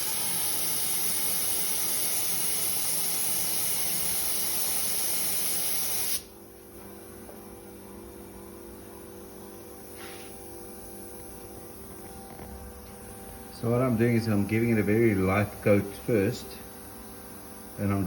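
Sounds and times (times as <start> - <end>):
paint spray gun hissing: 0.0 - 6.3.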